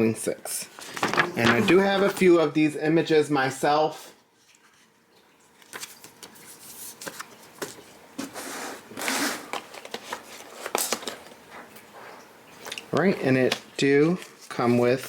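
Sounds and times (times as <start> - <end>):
cardboard and paper rustling: 0.8 - 2.4, 5.6 - 12.1, 13.0 - 15.0.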